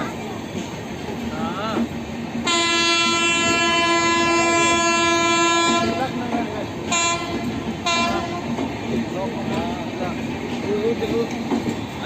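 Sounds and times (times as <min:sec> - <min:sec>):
train horn blasts: 0:02.4 - 0:06.2, 0:06.8 - 0:08.6.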